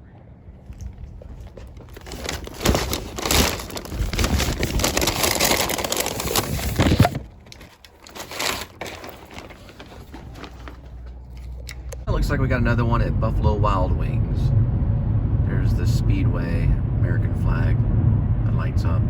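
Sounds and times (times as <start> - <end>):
rustling and crinkling handling: 0.7 - 12.1.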